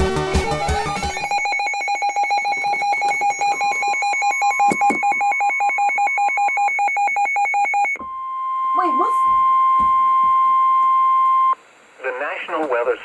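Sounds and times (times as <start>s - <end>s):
music: 0.0s - 1.5s
steady electronic tone: 0.0s - 4.6s
electronic alarm warbling: 0.0s - 8.0s.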